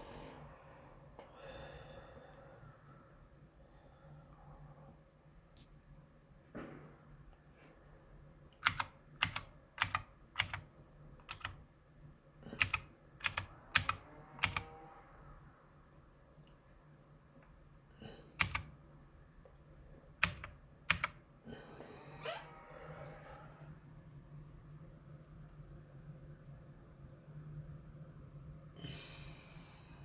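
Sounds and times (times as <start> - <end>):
mechanical keyboard key clicks: 8.6 - 10.6, 11.2 - 11.6, 12.6 - 14.7, 18.4 - 18.7, 20.2 - 21.2.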